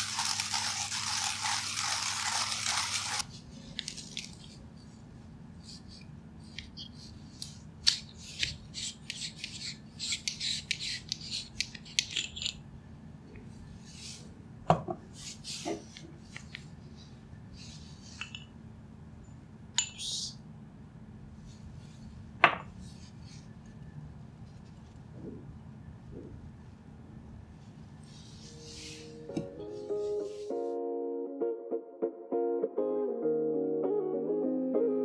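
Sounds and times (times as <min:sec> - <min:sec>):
small hard objects clinking: 0:00.0 - 0:03.2.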